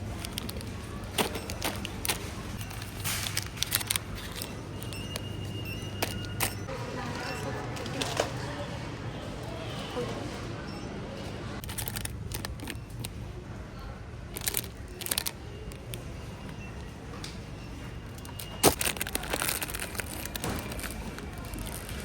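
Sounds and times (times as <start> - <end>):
packaging crinkling and clicking: 0.0 - 6.7, 11.6 - 13.2, 14.3 - 16.9, 18.1 - 22.0.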